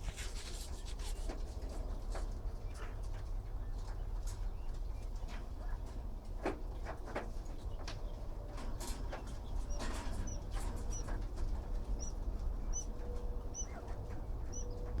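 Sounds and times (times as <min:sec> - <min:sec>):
nestling bird peeping: 0:09.0 - 0:15.0.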